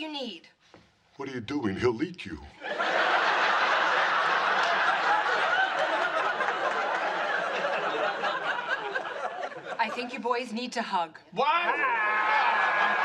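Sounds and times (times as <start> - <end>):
studio audience laughing: 2.6 - 10.3, 12.1 - 13.0.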